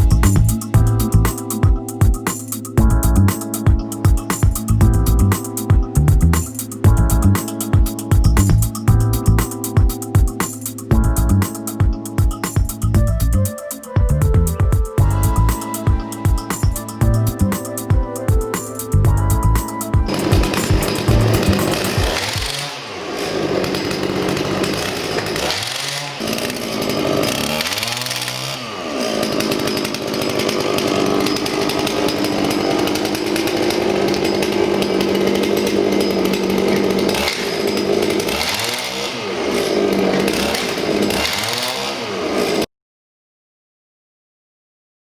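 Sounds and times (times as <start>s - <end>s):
small petrol engine revving: 19.1s - 42.7s.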